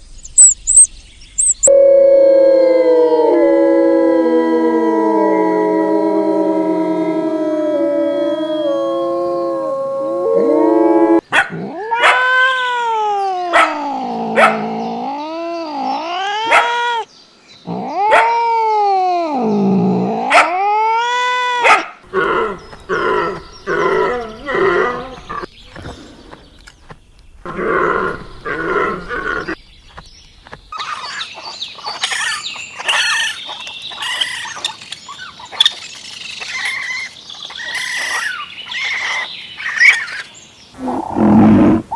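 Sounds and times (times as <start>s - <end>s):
high chirping: 0.0s - 2.1s
animal howls: 1.6s - 26.0s, 27.5s - 29.6s.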